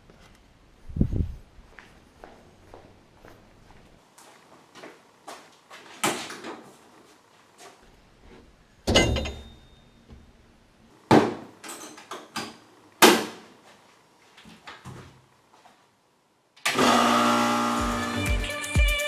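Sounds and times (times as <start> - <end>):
background music: 17.6 - 19.0.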